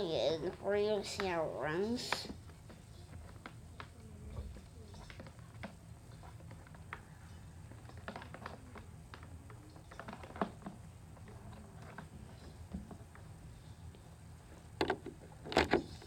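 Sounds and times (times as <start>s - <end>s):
plastic clicks and taps: 14.8s - 16.0s.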